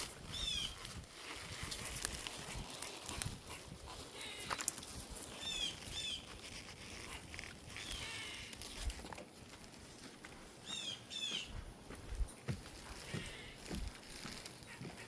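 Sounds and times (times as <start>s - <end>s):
small birds chirping: 0.1s - 0.9s, 4.0s - 8.9s, 10.6s - 15.0s.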